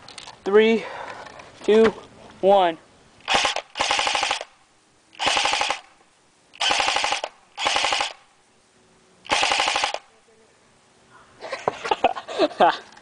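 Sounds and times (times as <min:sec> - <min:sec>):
airsoft rifle full-auto bursts: 0:03.2 - 0:04.6, 0:05.2 - 0:06.0, 0:06.6 - 0:08.3, 0:09.2 - 0:10.1.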